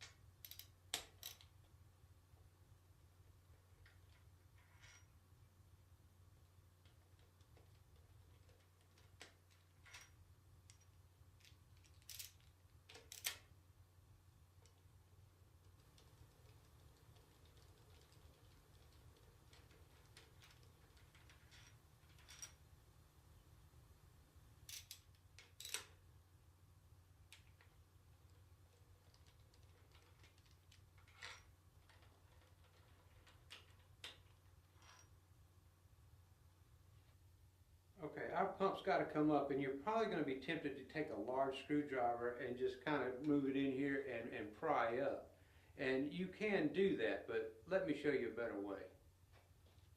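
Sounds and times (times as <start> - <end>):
tools and metal parts clicking: 0.0 - 1.5, 6.8 - 13.5, 15.7 - 22.6, 24.7 - 26.0
low steady hum: 0.0 - 49.3
tools clicking and knocking: 6.8 - 13.5.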